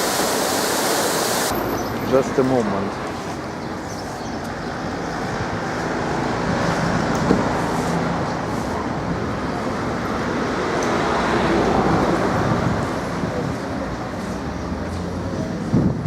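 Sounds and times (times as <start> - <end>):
road traffic rumble: 0.0 - 16.0.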